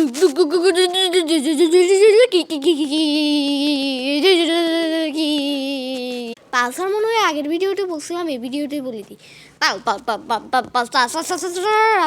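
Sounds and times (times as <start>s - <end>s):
person imitating motorbike engine: 0.0s - 6.4s.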